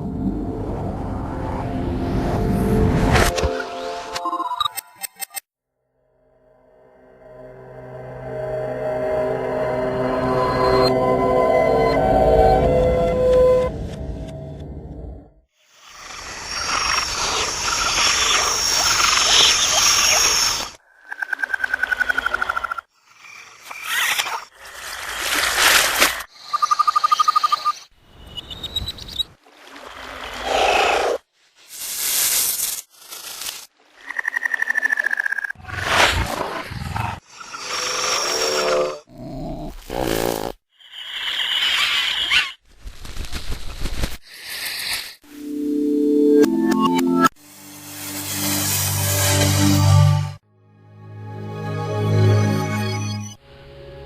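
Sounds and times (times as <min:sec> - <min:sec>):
animal-like calls: 0:29.7 - 0:31.2.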